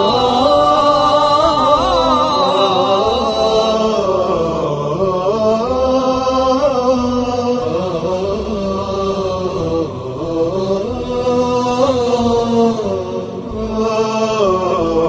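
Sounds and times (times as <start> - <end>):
person chanting: 0.0 - 15.0.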